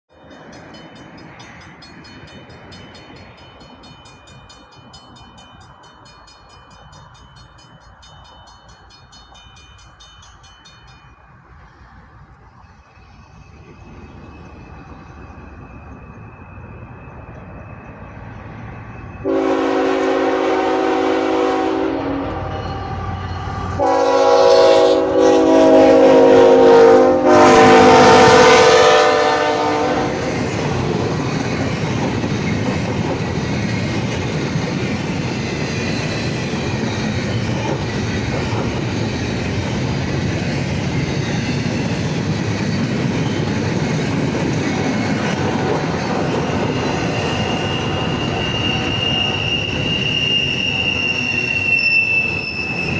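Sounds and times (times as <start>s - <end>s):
freight train wheels on rails: 0.1s - 52.9s
locomotive air horn blasts: 19.2s - 30.3s.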